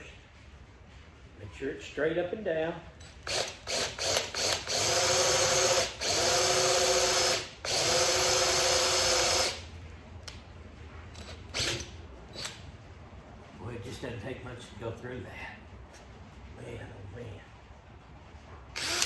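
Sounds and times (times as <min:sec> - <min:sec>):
electric drill boring: 0:03.2 - 0:09.6, 0:11.2 - 0:12.6, 0:18.8 - 0:19.0.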